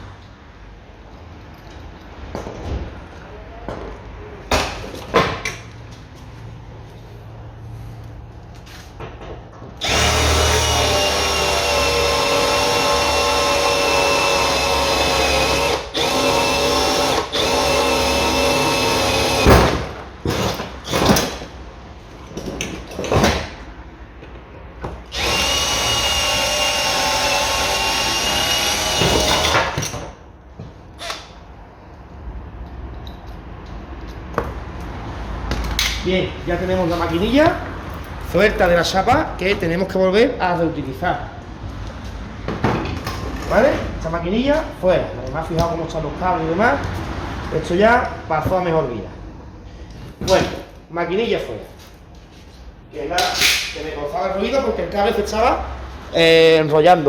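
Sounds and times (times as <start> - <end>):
cordless drill whining: 9.8 - 19.5, 25.1 - 29.7.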